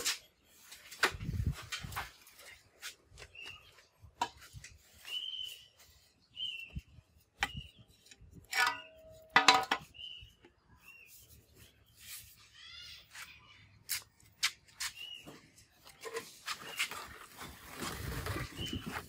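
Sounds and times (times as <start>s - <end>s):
bird chirping: 4.8s - 17.4s, 18.3s - 19.0s
metal tools knocking and clinking: 8.4s - 10.0s.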